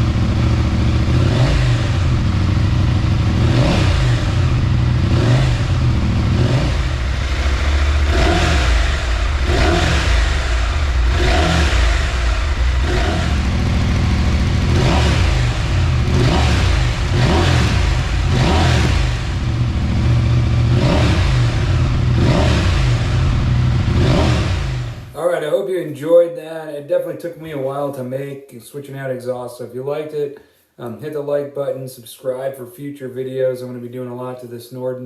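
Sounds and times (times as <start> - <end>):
motorcycle engine revving: 0.0 - 25.2.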